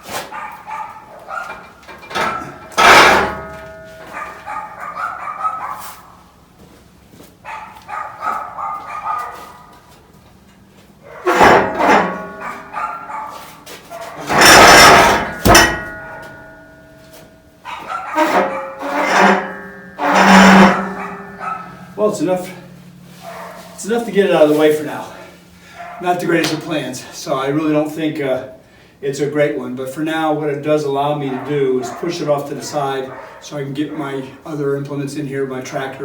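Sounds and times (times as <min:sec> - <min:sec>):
dogs barking: 0:00.2 - 0:03.4, 0:04.0 - 0:06.2, 0:07.4 - 0:09.9, 0:11.0 - 0:16.4, 0:17.6 - 0:18.8, 0:19.5 - 0:22.0, 0:23.2 - 0:23.8, 0:25.6 - 0:26.1, 0:31.2 - 0:33.5
dogs whining: 0:12.2 - 0:13.4, 0:17.7 - 0:18.8, 0:20.4 - 0:22.0.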